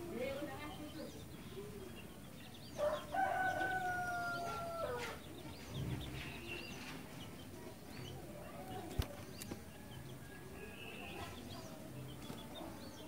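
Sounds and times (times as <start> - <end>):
small bird chirping: 0.1 - 13.0
rooster crowing: 2.8 - 5.1.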